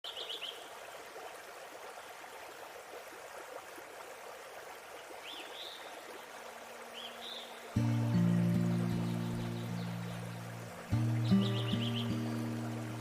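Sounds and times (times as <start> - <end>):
bird chirps: 7.0 - 13.0
waterfall rushing: 7.7 - 13.0.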